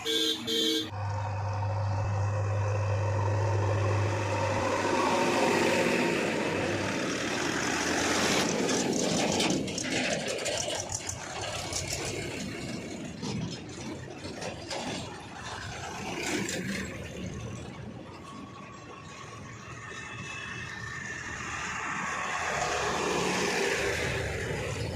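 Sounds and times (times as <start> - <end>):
diesel machinery running: 0.0 - 24.9
machinery clattering and rattling: 6.8 - 20.8.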